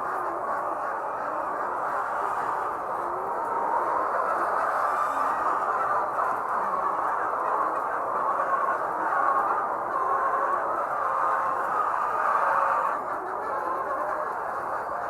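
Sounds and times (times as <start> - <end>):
flock of hens calling: 0.0 - 15.0.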